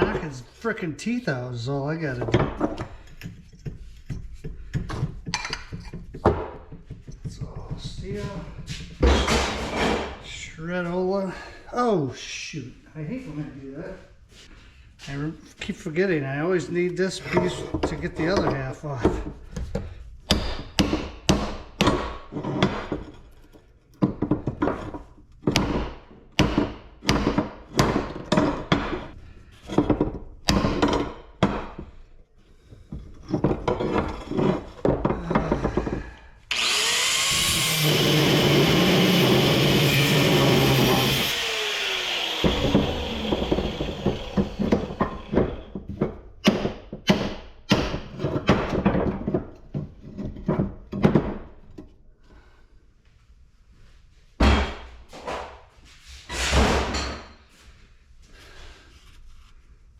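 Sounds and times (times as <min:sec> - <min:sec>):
power tool running: 0:36.5 - 0:45.7.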